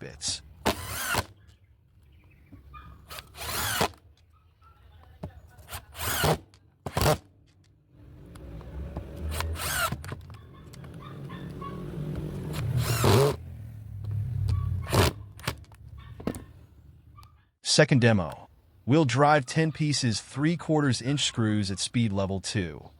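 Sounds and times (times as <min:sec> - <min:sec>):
impact driver whining: 0:00.6 - 0:01.5, 0:02.9 - 0:04.1, 0:05.6 - 0:07.3, 0:08.3 - 0:13.4, 0:14.4 - 0:16.6.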